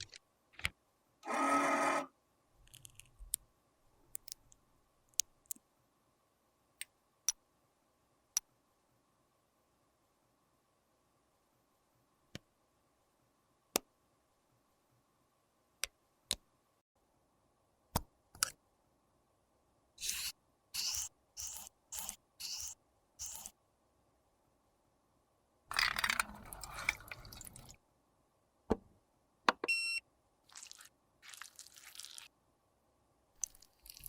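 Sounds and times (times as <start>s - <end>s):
makeup scraping strokes: 20.0s - 23.5s.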